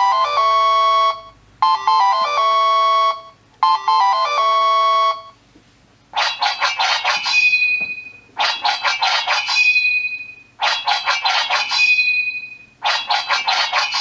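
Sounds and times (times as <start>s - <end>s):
electronic alarm clock tone: 0.0s - 5.4s.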